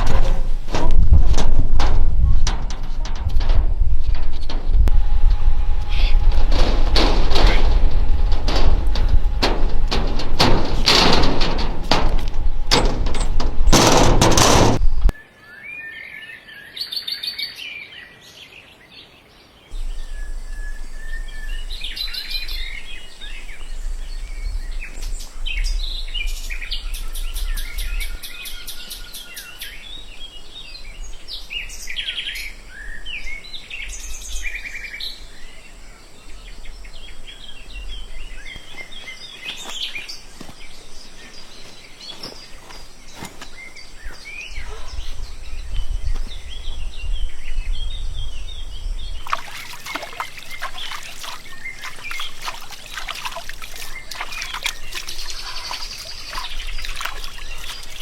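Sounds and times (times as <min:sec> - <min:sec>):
low rumble: 0:00.0 - 0:15.1, 0:19.8 - 0:29.1
songbirds chirping and trilling: 0:00.0 - 0:58.0.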